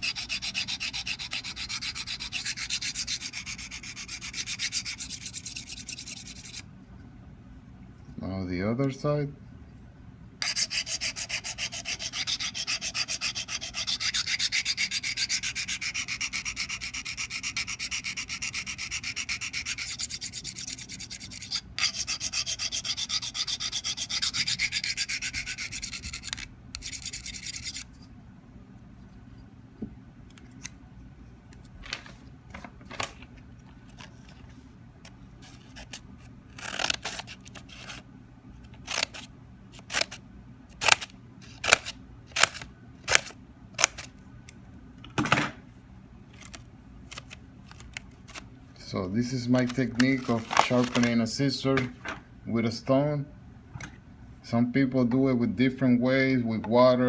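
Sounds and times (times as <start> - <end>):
blade scraping on sharpening stone: 0.0 - 6.6, 10.4 - 27.9.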